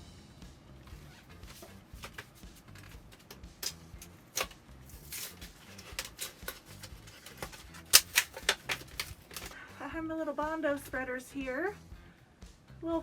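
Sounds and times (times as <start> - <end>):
plastic tools clicking and tapping: 1.5 - 9.6.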